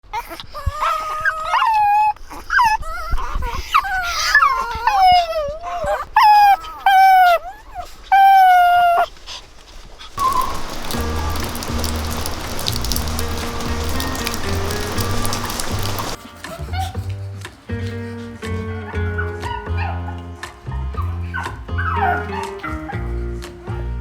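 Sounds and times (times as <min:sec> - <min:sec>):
dog howling and whining: 0:00.1 - 0:09.1, 0:10.2 - 0:16.2, 0:21.0 - 0:23.1.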